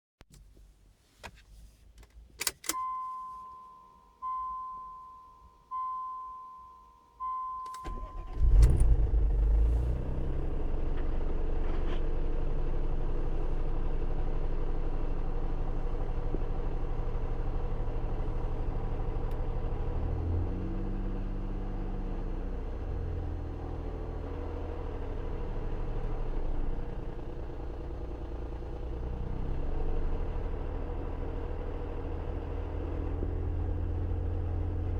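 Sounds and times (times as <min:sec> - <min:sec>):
dashboard warning chime: 0:02.6 - 0:08.4
car engine cranking and starting: 0:07.7 - 0:34.9.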